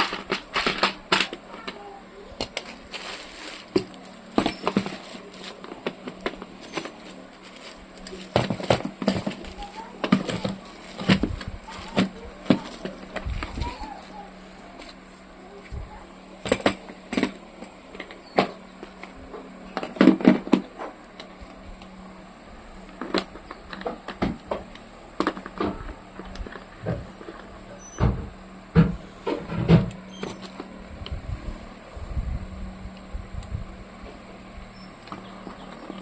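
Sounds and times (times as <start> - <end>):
steady low hum: 0.0 - 36.0
objects knocking and clicking: 8.0 - 13.7.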